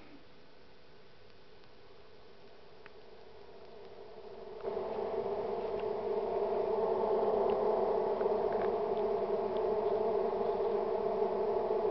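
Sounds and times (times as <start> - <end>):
bees buzzing: 3.0 - 11.9.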